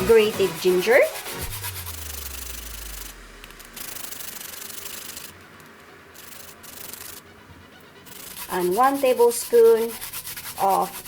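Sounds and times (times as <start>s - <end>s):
scraping and rubbing in a bowl: 0.0s - 5.4s, 8.0s - 11.0s.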